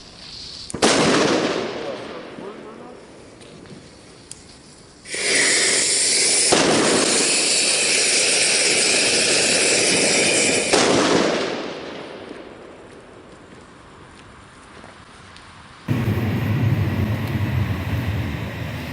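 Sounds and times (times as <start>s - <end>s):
firework hissing and bursting: 0.0s - 1.6s, 3.9s - 11.6s, 15.9s - 18.9s.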